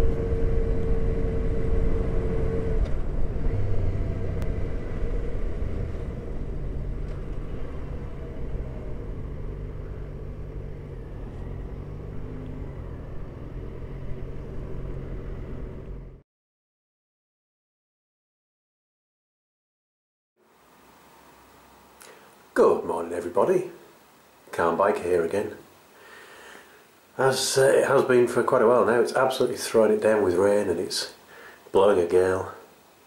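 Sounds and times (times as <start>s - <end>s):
motorcycle engine rumbling: 0.0s - 16.2s.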